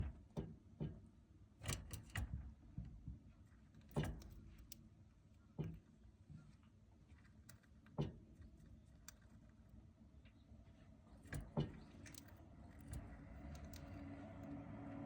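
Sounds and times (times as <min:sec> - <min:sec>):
pet bird tapping and clicking: 0:11.2 - 0:14.6.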